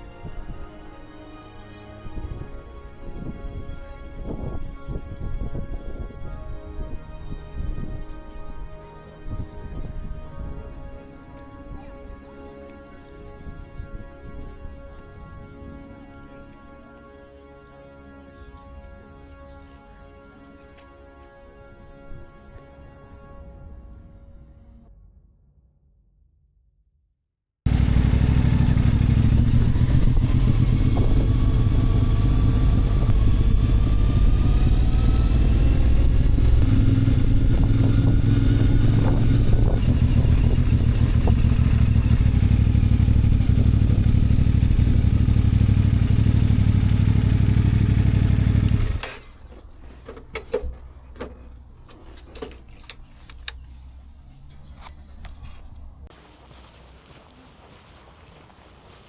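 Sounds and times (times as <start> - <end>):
engine running loudly: 27.7 - 49.3
footsteps: 54.5 - 59.0.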